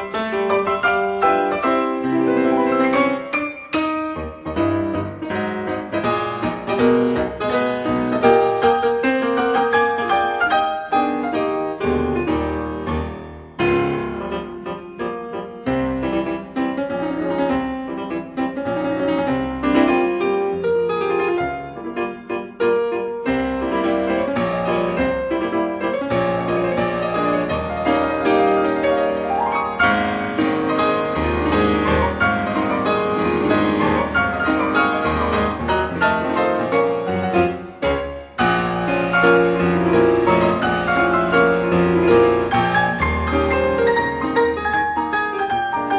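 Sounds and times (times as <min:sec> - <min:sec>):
piano music: 0:00.0 - 0:45.9.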